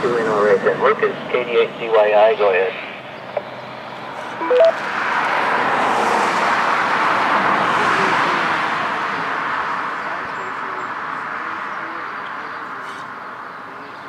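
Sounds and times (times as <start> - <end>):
vehicle passing by: 2.7 - 11.8
two-way radio two-note beep: 4.4 - 4.8.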